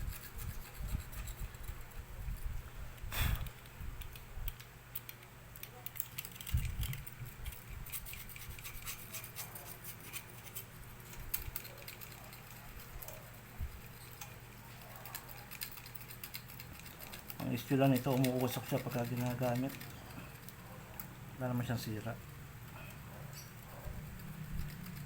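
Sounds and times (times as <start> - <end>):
low steady hum: 0.0 - 25.0
hand tool clicks and scrapes: 15.0 - 21.1.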